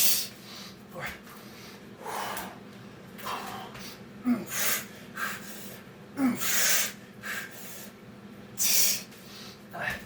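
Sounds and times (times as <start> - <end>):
man breathing hard: 0.0 - 8.0.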